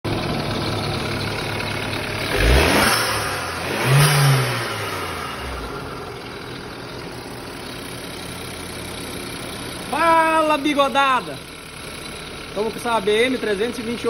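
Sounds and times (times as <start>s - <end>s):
car engine idling and revving: 0.1s - 14.0s.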